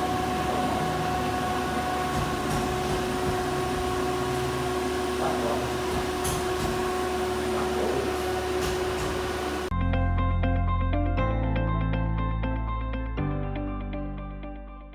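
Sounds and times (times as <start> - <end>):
constant whine: 0.0 - 9.7
plasma torch hissing: 0.0 - 9.7.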